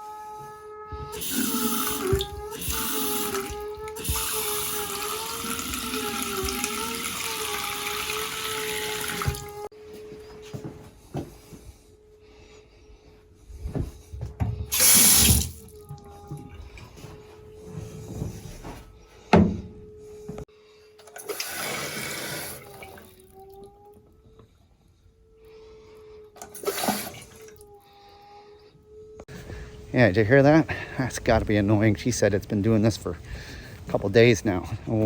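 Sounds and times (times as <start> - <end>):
high humming tone in plumbing: 0.0 - 35.0
faucet running water: 1.2 - 9.7, 14.7 - 15.8, 21.1 - 23.4, 26.4 - 27.6.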